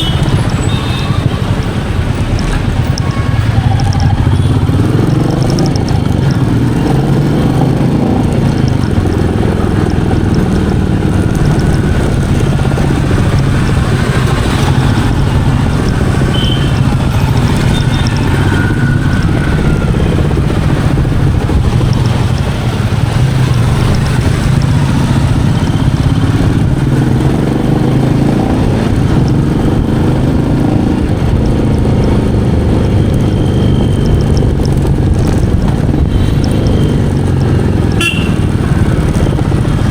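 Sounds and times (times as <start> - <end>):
motorcycle engine thumping: 0.0 - 39.9
road noise: 0.0 - 39.9.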